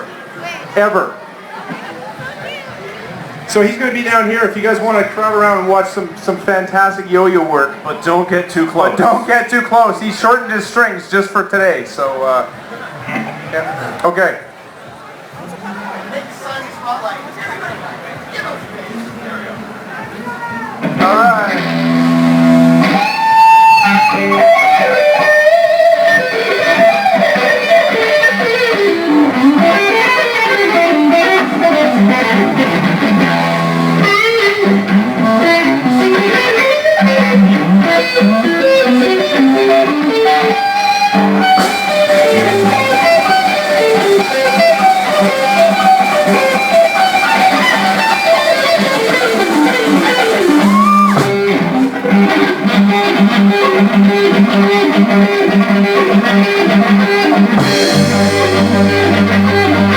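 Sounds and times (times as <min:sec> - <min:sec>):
rock band instrumental: 0:20.8 - 0:59.9.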